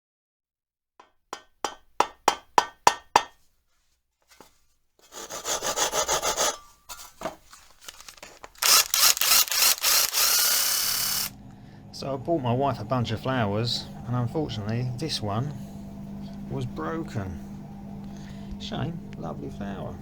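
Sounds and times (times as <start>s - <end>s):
rapid rasping of wood: 5.1s - 6.6s
steady whirring noise: 7.9s - 20.0s.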